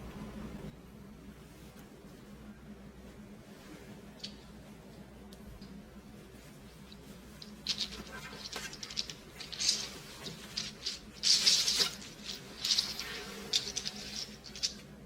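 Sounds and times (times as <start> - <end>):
crinkly rustling of handled items: 6.4 - 15.0.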